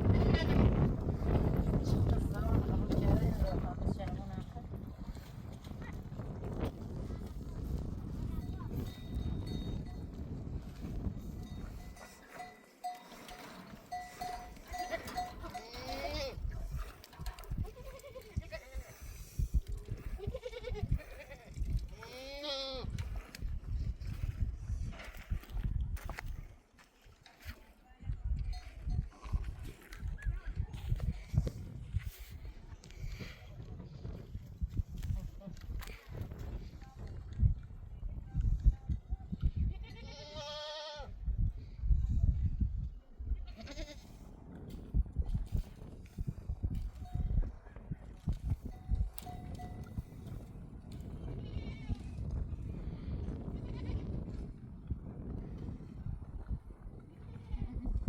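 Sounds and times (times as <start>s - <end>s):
livestock bleating: 13.9s - 16.4s, 20.2s - 22.8s, 39.8s - 41.1s, 43.4s - 44.1s, 53.5s - 54.0s.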